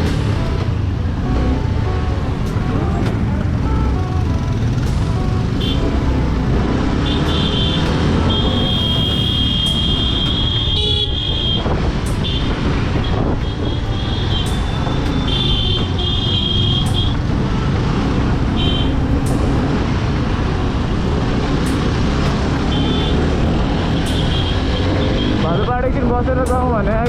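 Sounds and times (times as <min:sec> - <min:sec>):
motorcycle engine running: 0:00.0 - 0:27.0
traffic: 0:00.0 - 0:27.0
wind rumble on helmet: 0:07.9 - 0:16.1.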